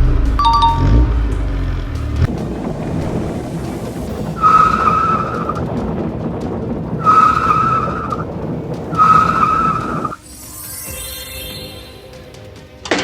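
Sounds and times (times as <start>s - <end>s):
vehicle running: 0.0s - 10.2s.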